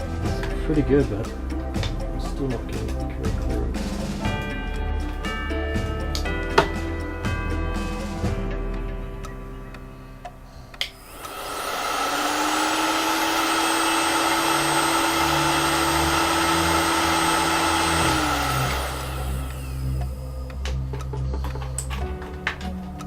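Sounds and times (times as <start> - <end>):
heat gun blowing: 10.8 - 20.4.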